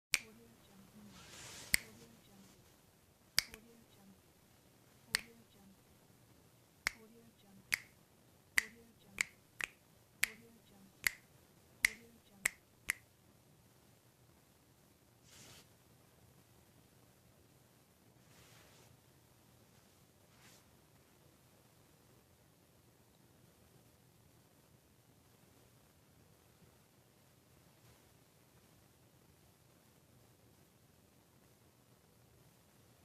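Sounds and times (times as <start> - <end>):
fingers snapping: 3.4 - 3.6, 5.1 - 5.3, 7.7 - 7.9, 8.6 - 10.4, 11.0 - 11.2.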